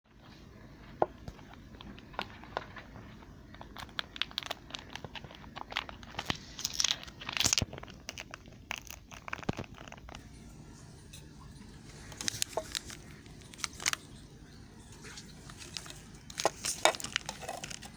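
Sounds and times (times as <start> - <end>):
knife crunching through soap: 1.5 - 10.3, 15.0 - 17.9.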